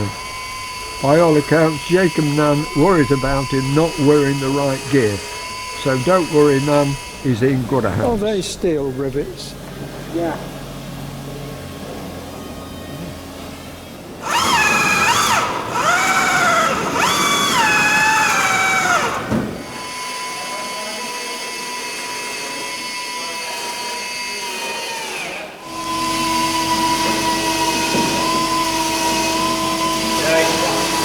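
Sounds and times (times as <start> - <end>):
power drill drilling steel rivets: 0.0 - 9.2.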